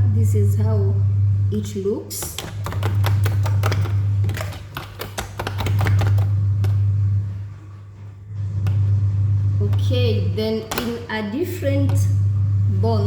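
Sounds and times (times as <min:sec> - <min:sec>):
low hum: 0:00.0 - 0:01.7, 0:06.1 - 0:11.0, 0:11.6 - 0:13.0.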